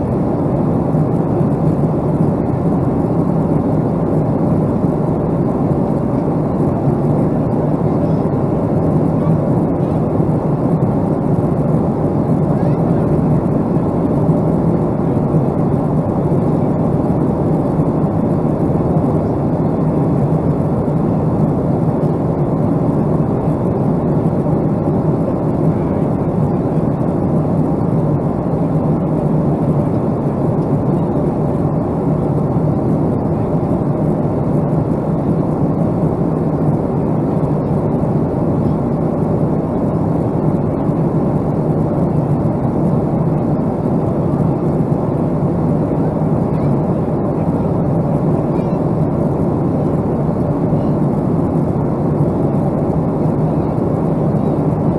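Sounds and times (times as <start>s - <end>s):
airliner jet noise: 0.0s - 54.9s.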